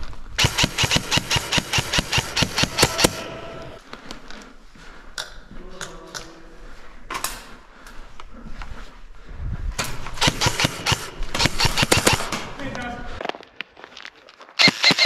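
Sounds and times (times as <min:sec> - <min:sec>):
airsoft rifle shots: 0:00.4 - 0:03.4, 0:10.2 - 0:12.5, 0:14.6 - 0:15.0.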